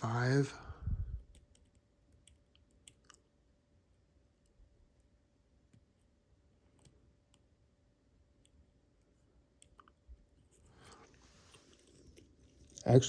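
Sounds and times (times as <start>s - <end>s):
soft rustle: 10.3s - 12.8s.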